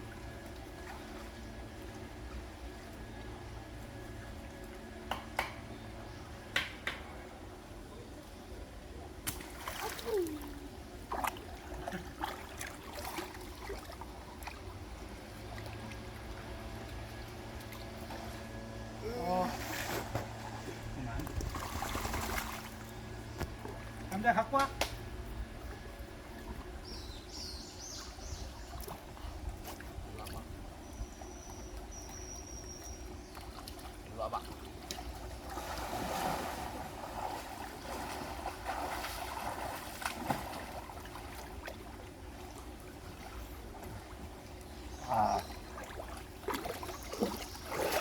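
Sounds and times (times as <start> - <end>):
stream water running: 0.0 - 48.0
water splashes: 9.2 - 25.0, 33.3 - 48.0.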